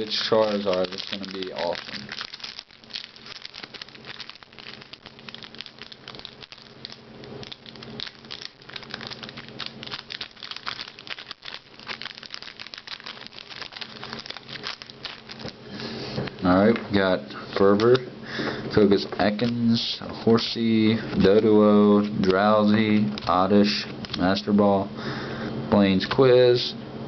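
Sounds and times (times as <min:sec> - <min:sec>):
foil wrapper crinkling and tearing: 0:00.0 - 0:15.9.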